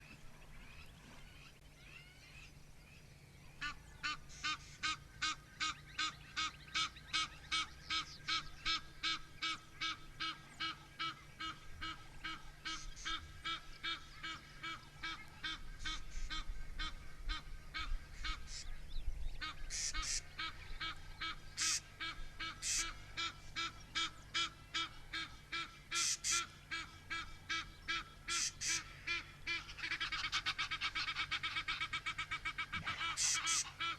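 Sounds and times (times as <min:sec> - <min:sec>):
bird calling harsh notes: 0:19.4 - 0:33.9.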